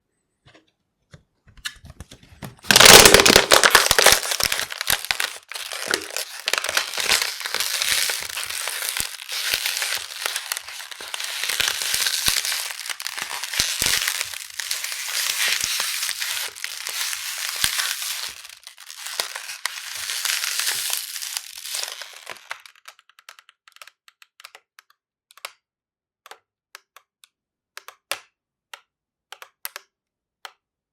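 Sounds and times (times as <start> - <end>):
plastic bottle crunching: 2.6 - 22.9
plastic bottle crinkling: 2.6 - 23.0.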